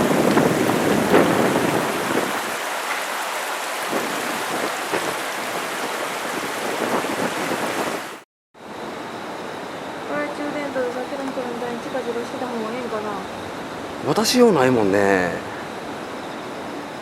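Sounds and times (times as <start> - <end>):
wind buffeting microphone: 0.0 - 2.7, 3.7 - 8.1
heavy rain pouring: 0.0 - 8.2.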